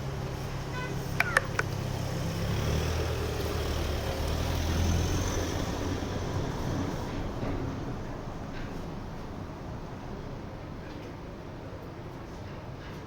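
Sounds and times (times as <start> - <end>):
vehicle engine rumbling: 0.0 - 9.4
sharp clicks: 1.2 - 1.8.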